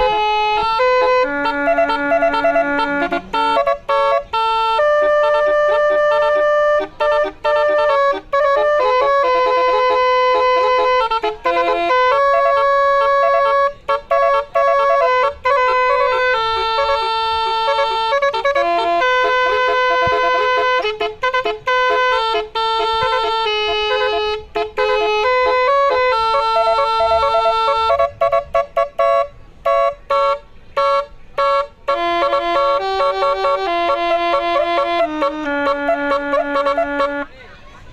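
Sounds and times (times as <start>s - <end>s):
multi-tone bus horn tune: 0.0s - 37.9s
short choppy horn blasts: 0.0s - 37.9s.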